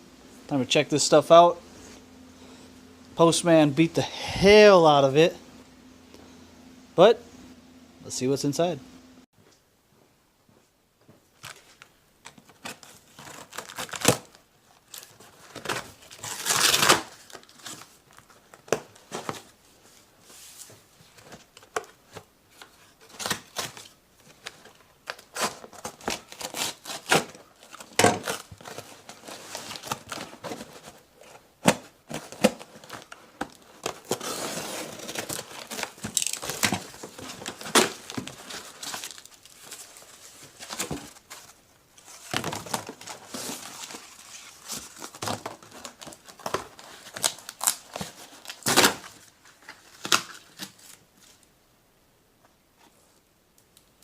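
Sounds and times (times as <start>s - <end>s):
packaging tearing and crinkling: 11.4s - 19.5s, 21.6s - 51.0s.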